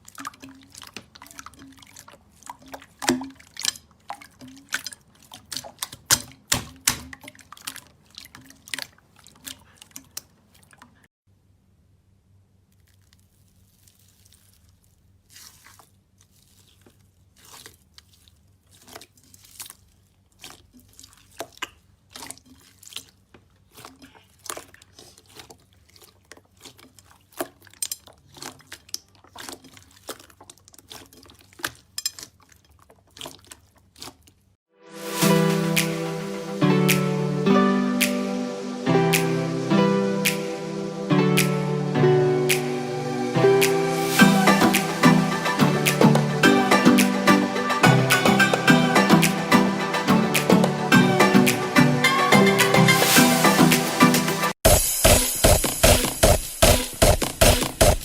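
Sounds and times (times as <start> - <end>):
slime squishing wet clicks: 0.0 - 10.9.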